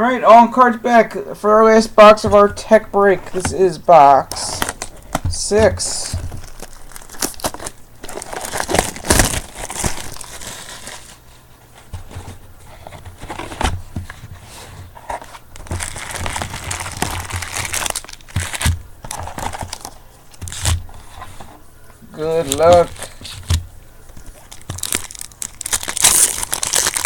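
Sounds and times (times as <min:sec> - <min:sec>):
plastic wrapping crinkling and tearing: 0:04.3 - 0:11.2, 0:15.5 - 0:20.9, 0:22.2 - 0:27.0.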